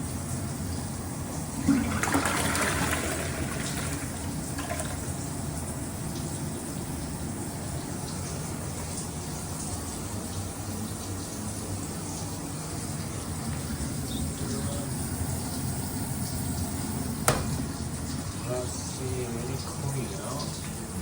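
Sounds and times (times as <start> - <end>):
water rushing: 1.5 - 5.2.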